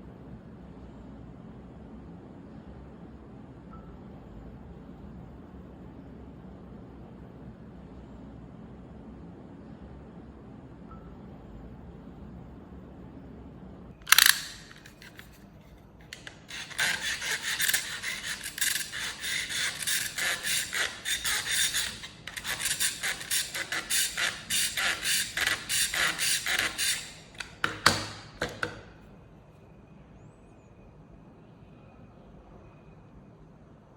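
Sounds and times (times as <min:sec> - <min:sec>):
sharp click: 0:14.0 - 0:15.4
quick scraping strokes: 0:16.0 - 0:27.6.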